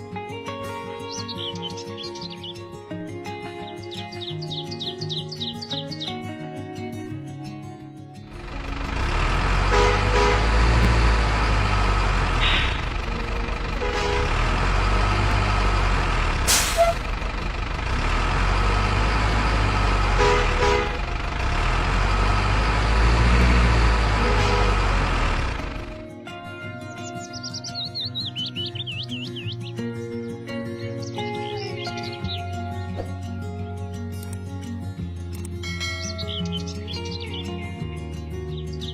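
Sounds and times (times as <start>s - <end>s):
truck engine rumbling: 8.3s - 26.1s
air brake hiss: 16.5s - 17.1s.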